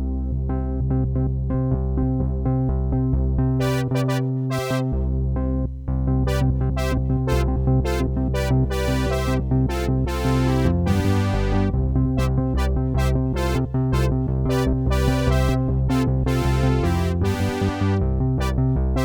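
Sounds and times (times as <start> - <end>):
synthesizer held low bass: 0.0 - 19.0
short bright synthesizer notes: 6.3 - 15.6.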